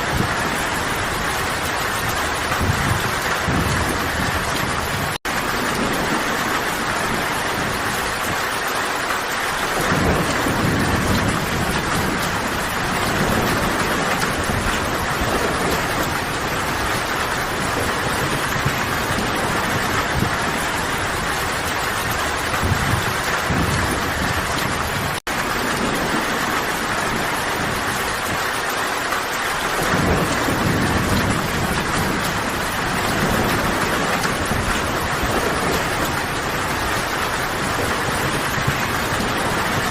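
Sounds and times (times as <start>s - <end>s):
rolls of thunder: 0.0s - 8.4s, 9.6s - 28.4s, 29.6s - 39.9s
heavy rain: 0.0s - 39.9s.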